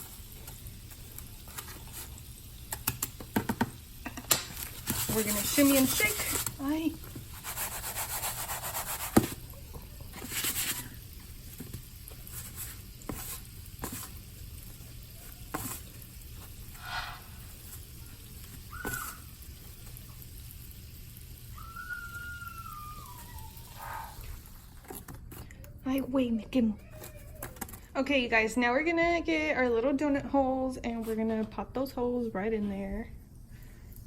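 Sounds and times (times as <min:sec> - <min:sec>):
hot oil sizzling: 0:00.0 - 0:25.3.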